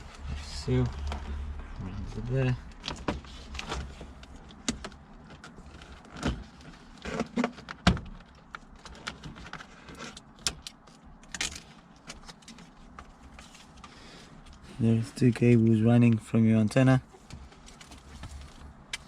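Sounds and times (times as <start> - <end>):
wiring and plastic trim rattling: 0.8 - 13.4.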